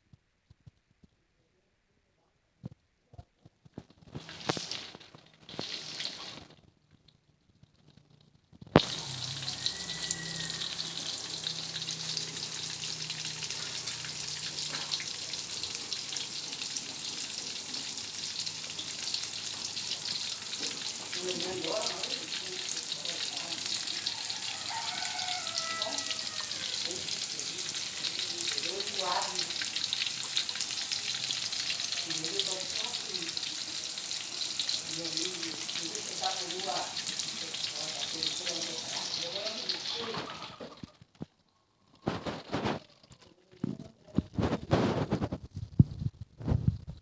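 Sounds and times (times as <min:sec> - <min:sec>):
tofu sizzling in hot oil: 0:04.0 - 0:06.6, 0:08.7 - 0:40.2.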